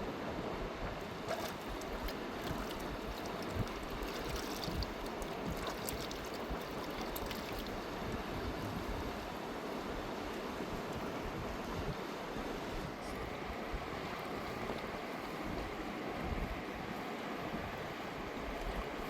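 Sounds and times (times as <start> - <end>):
river rushing: 1.0 - 12.5.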